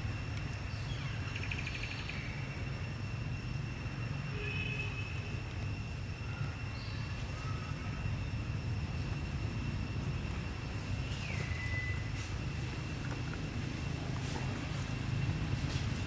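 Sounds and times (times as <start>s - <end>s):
steady low rumble: 0.0s - 16.0s.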